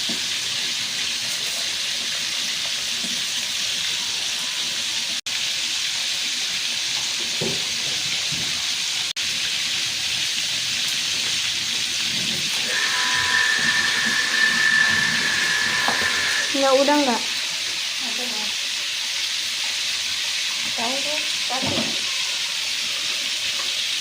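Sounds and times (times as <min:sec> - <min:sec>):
steady hissing noise: 0:12.5 - 0:18.9.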